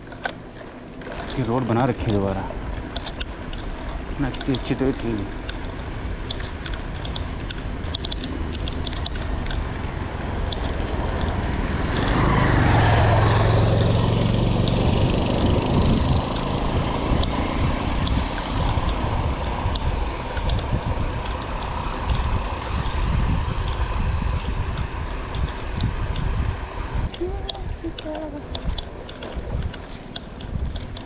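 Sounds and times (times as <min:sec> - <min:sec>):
light clicks and rattles: 0:00.0 - 0:09.7, 0:27.1 - 0:31.0
wind rumble on microphone: 0:00.0 - 0:31.0
vehicle passing by: 0:07.2 - 0:27.1.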